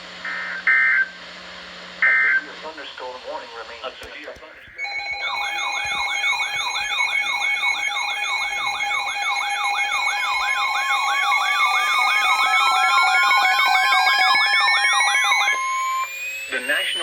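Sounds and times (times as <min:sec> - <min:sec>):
steady pulsing tones: 0:02.4 - 0:17.0
electronic siren yelp: 0:04.7 - 0:17.0
rising siren wail: 0:04.8 - 0:17.0.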